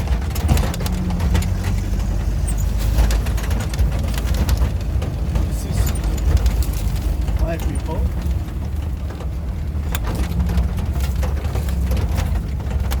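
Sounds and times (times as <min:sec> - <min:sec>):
short knocks and rattles: 0:00.0 - 0:13.0
vehicle engine deep rumble: 0:00.0 - 0:13.0.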